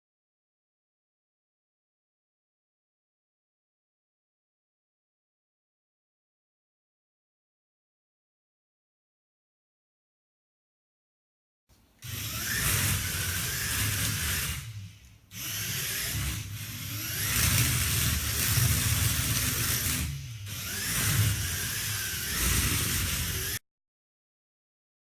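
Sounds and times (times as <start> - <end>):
toy car motors whirring: 12.0 - 23.6.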